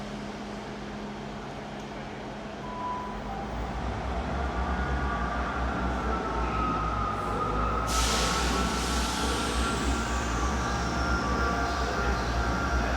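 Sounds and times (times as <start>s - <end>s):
diesel train engine rumble: 0.0s - 12.9s.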